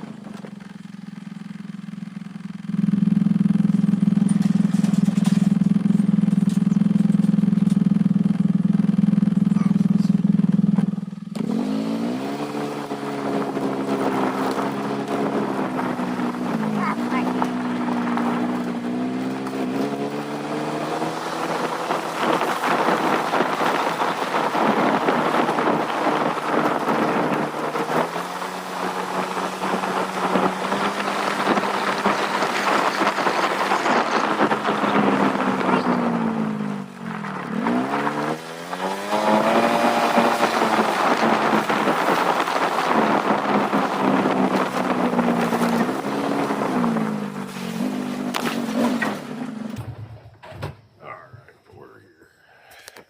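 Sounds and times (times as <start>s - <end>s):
vehicle engine running and revving: 0.0s - 50.1s
road noise: 0.0s - 53.0s
wind noise: 11.5s - 49.2s.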